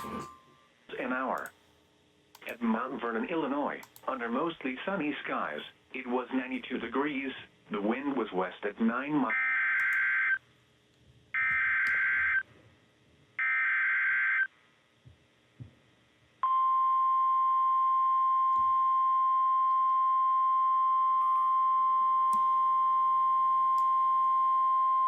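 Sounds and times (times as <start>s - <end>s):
steady warning alarm tone: 0.0s - 0.7s, 9.3s - 10.4s, 11.4s - 12.5s.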